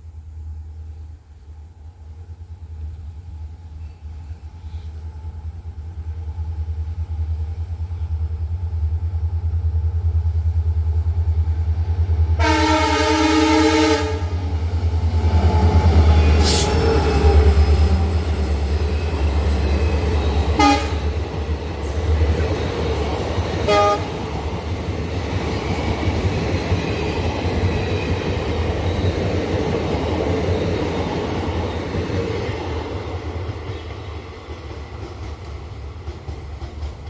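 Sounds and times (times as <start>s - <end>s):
rushing rail noise: 0.0s - 37.0s
locomotive rumble: 11.1s - 37.0s
locomotive horn: 12.4s - 14.5s, 20.5s - 21.1s, 23.7s - 24.2s.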